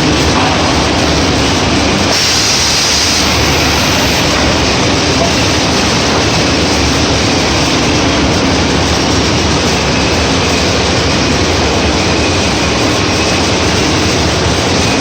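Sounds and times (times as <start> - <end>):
packaging machine running: 0.0 - 15.0.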